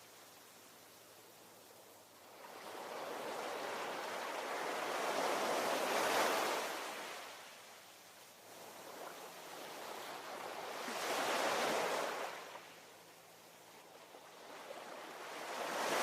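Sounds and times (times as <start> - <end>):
wave washing ashore: 2.1 - 12.9, 14.2 - 16.0.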